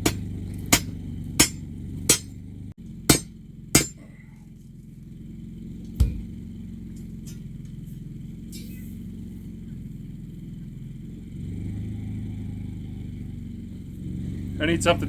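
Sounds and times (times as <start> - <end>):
sledgehammer hitting steel rod: 0.0 - 2.4, 3.1 - 4.1, 6.0 - 6.3
engine drone: 0.0 - 15.0.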